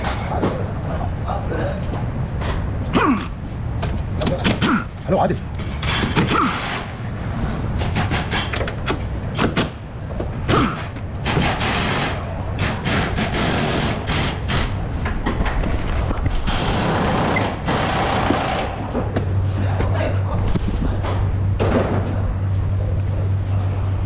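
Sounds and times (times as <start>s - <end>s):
steady low hum: 0.0s - 24.0s
pneumatic impact wrench rattling: 5.6s - 6.9s, 10.5s - 14.8s, 16.5s - 18.8s.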